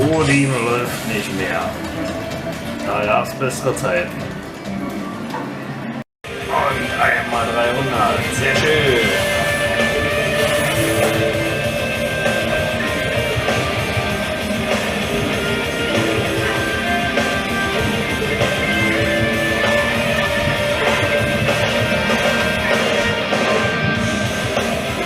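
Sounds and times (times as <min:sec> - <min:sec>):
rock music with electric guitar: 0:00.0 - 0:03.2, 0:04.0 - 0:25.0.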